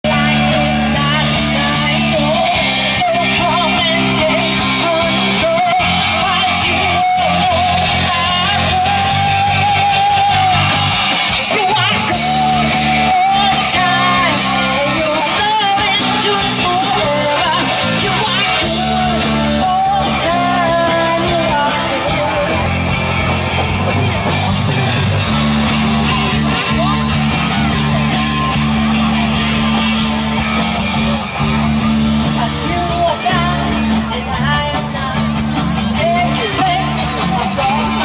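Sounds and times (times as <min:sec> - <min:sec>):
person singing gospel: 0:00.0 - 0:22.9, 0:32.3 - 0:38.0
instrumental backing music: 0:00.0 - 0:38.0.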